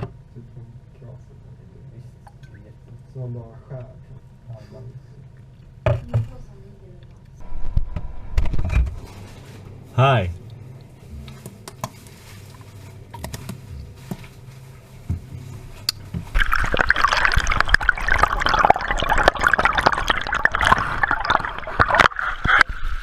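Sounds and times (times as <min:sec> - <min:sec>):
water running and splashing: 0:16.3 - 0:22.7.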